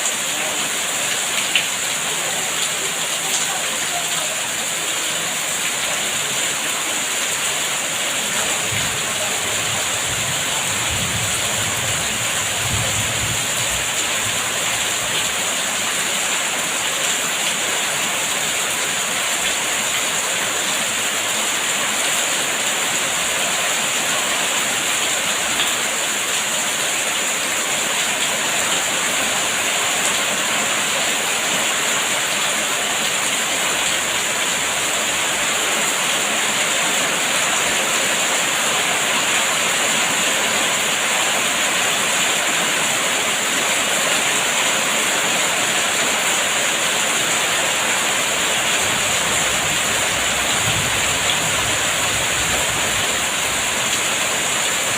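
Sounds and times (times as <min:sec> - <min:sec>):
steady rainfall: 0:00.0 - 0:54.9.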